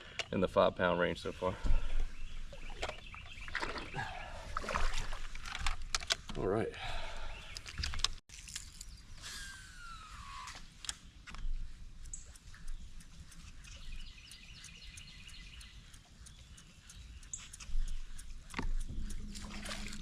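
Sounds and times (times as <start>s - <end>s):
clicks and ticks: 10.4s - 20.0s.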